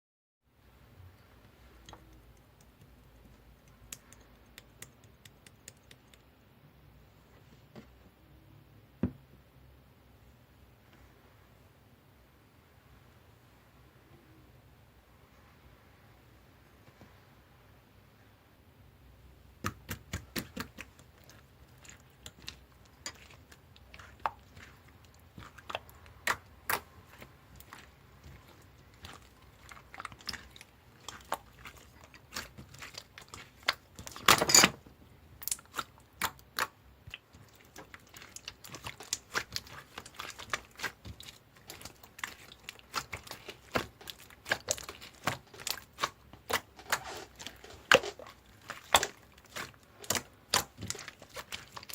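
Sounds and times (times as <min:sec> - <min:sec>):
slime squished by hand: 0:19.6 - 0:34.4, 0:35.4 - 0:51.9.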